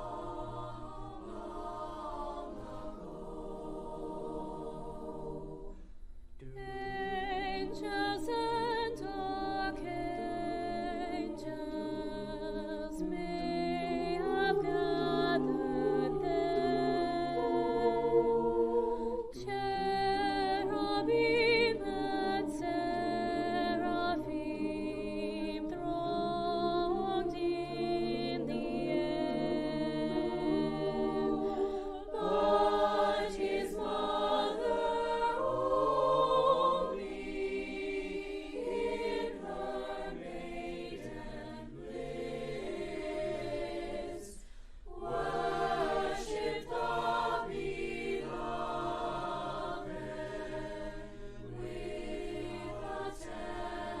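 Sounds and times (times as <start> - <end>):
choir singing sustained chords: 0.0 - 54.0.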